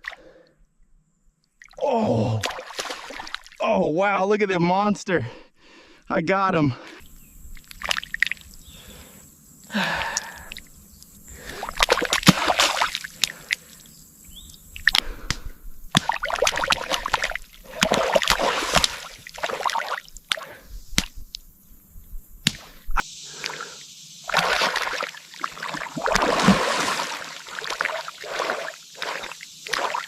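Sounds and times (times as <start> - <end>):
muddy water sloshing: 1.6 - 3.6, 7.6 - 9.1, 11.4 - 13.7, 15.9 - 20.6, 24.3 - 30.0
wet slaps: 14.9 - 17.0, 20.3 - 21.4, 22.4 - 23.6.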